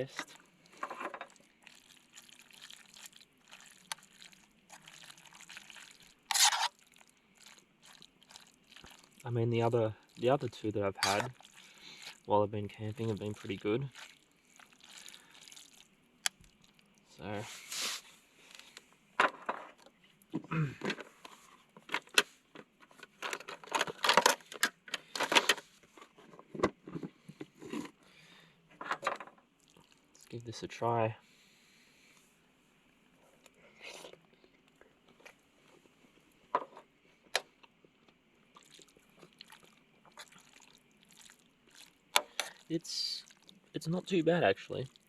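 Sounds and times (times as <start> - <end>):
utensil stirring pasta in metal pot: 0.0 - 9.3, 9.9 - 16.6
utensil scraping in cooking pot: 4.7 - 6.8, 11.0 - 12.3, 17.4 - 18.8.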